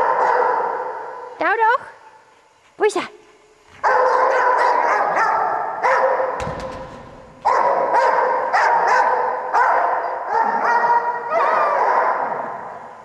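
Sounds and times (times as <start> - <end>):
dog barking: 0.0 - 1.2, 3.8 - 6.4, 7.4 - 12.4
low thump: 6.4 - 7.4.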